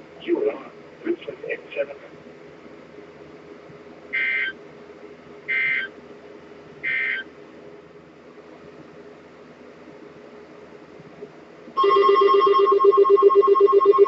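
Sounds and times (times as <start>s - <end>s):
faint steady hum: 0.0s - 14.0s
warbling two-tone data screech: 4.2s - 4.5s, 5.5s - 5.9s, 6.8s - 7.2s.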